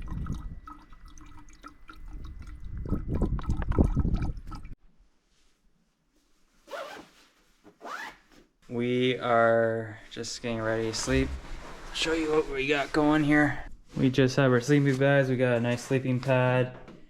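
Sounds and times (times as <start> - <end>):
water dripping and trickling: 0.0 - 4.8.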